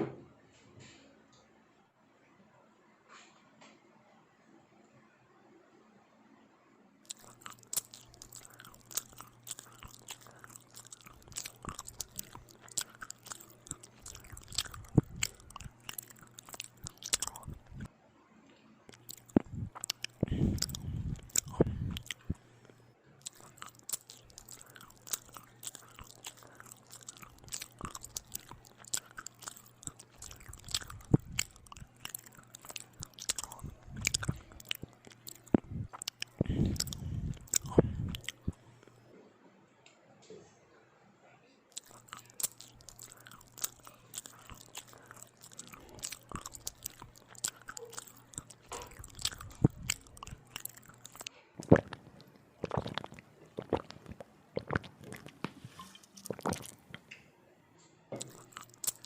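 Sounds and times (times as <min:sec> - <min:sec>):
chewing and crunching bread: 0:07.0 - 0:17.9, 0:18.9 - 0:39.0, 0:41.7 - 0:57.2, 0:58.1 - 0:59.0
wet mouth clicks: 0:07.1 - 0:17.9, 0:18.9 - 0:38.6, 0:41.8 - 0:57.1, 0:58.1 - 0:59.0.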